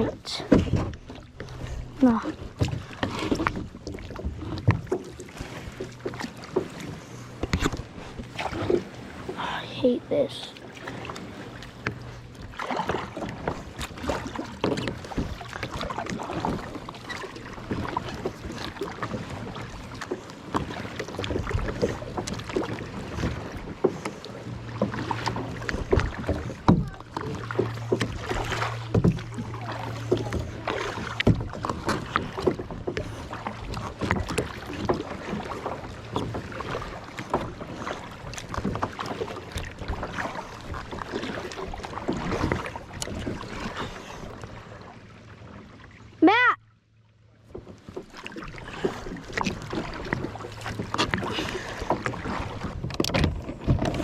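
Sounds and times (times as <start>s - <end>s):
knocking and clicking of gear: 52.8s - 54.0s.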